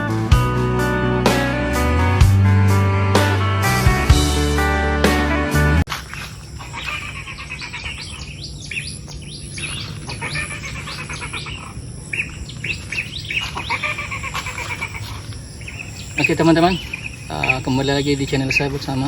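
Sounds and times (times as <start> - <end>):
birds chirping: 5.9 - 19.0
high insect buzz: 5.9 - 19.0.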